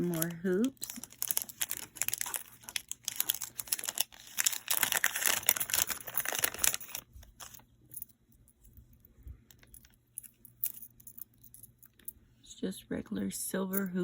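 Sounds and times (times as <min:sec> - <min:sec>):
packaging crinkling: 0:00.0 - 0:07.6.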